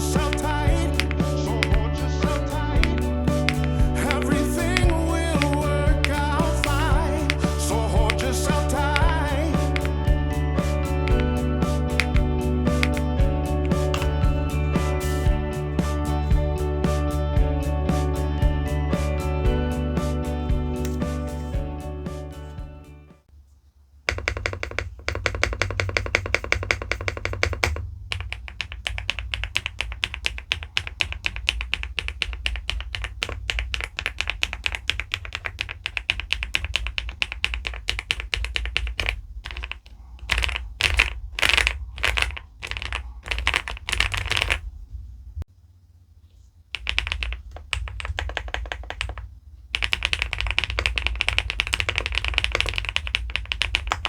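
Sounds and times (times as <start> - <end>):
fast typing on mechanical keyboard: 0.0 - 10.2, 11.0 - 14.3, 24.1 - 44.6, 46.7 - 54.0.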